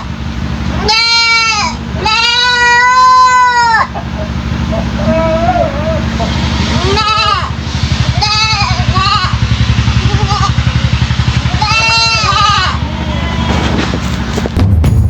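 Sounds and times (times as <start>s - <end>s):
steady low throb: 0.0s - 15.0s
goat kid bleating: 0.7s - 4.2s, 4.8s - 9.4s, 10.0s - 10.6s, 11.4s - 14.0s.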